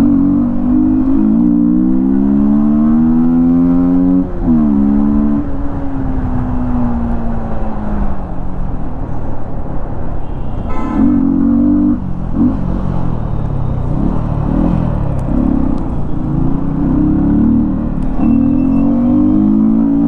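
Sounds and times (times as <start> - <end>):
motorcycle engine revving: 0.0 - 5.4, 11.0 - 20.0.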